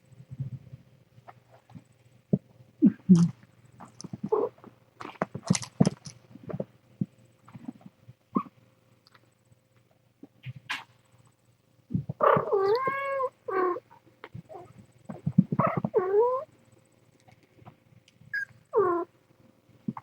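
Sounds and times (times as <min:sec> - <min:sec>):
cats meowing: 0:12.2 - 0:13.8, 0:14.5 - 0:16.5, 0:18.4 - 0:19.1.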